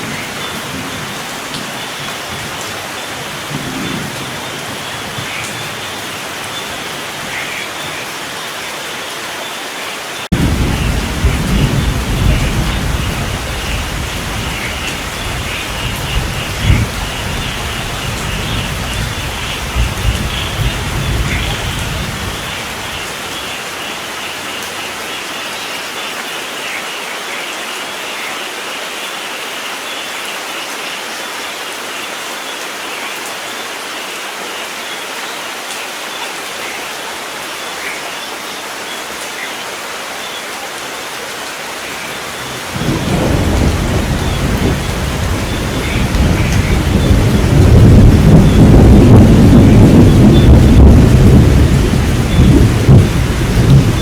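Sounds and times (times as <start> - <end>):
rain falling: 0.0 - 54.0
thunder rumbling: 10.3 - 23.6, 41.7 - 54.0.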